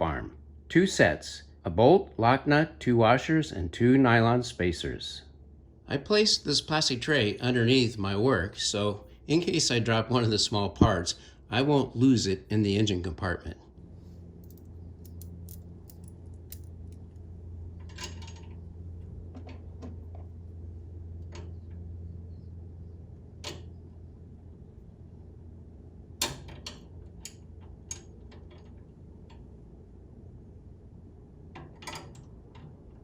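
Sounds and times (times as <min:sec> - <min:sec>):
steady low hum: 0:00.0 - 0:31.6
small metal hardware clinking: 0:14.4 - 0:17.2.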